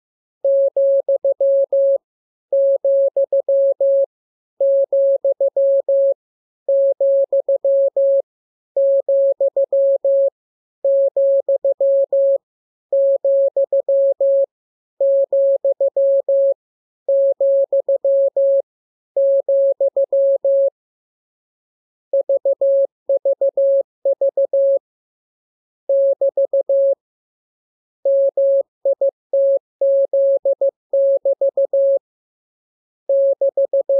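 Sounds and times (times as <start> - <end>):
morse code beeps: 22.2 - 24.8, 25.9 - 27.0, 28.0 - 32.0, 33.1 - 33.9.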